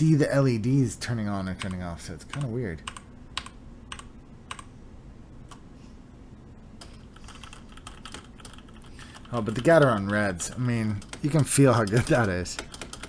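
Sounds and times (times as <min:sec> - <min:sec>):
mechanical keyboard typing: 0:06.8 - 0:13.0.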